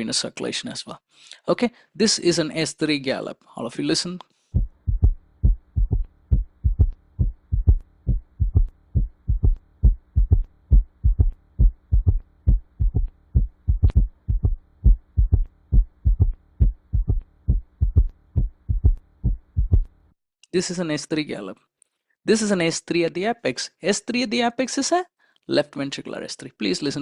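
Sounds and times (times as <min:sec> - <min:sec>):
heartbeat thuds in triple rhythm: 0:04.6 - 0:20.0.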